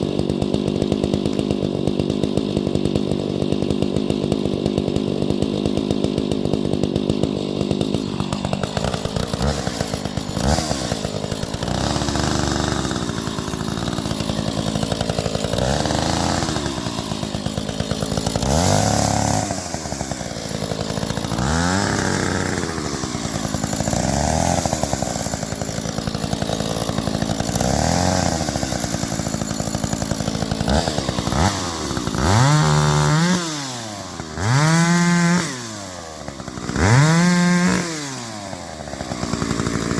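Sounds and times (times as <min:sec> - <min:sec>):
chainsaw revving: 0:00.0 - 0:39.9.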